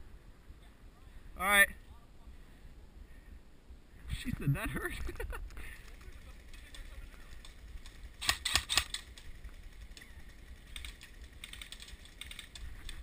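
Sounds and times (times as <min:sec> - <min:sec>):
airsoft guns firing: 0:07.3 - 0:12.6.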